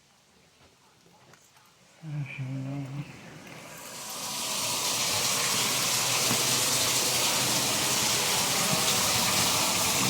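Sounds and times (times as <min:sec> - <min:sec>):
water rushing through pipes: 0:03.6 - 0:10.0.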